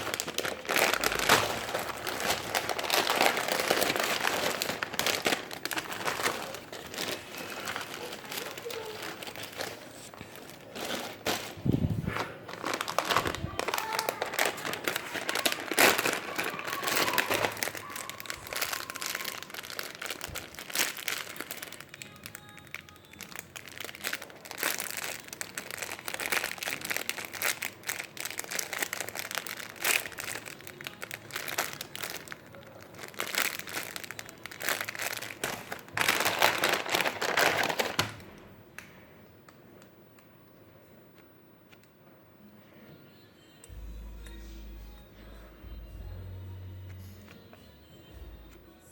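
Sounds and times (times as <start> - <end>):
plastic packaging crinkling: 0.0 - 38.5.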